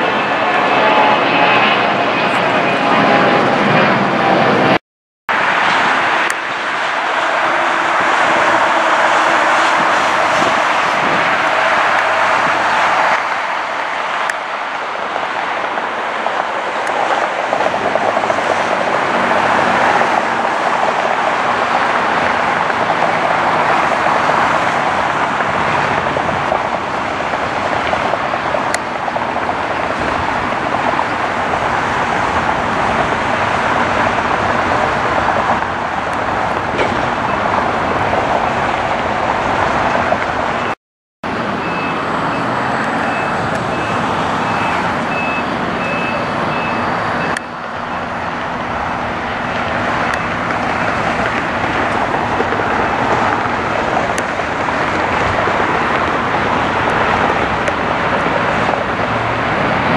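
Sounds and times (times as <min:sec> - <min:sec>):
engine roar: 0:00.0 - 0:59.9
short high beeps: 0:41.6 - 0:47.5.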